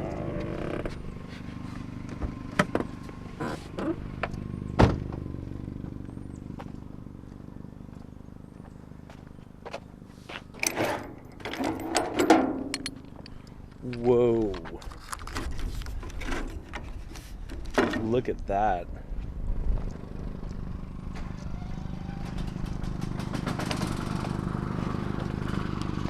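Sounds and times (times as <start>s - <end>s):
car engine running: 0.0s - 13.9s, 19.1s - 26.0s.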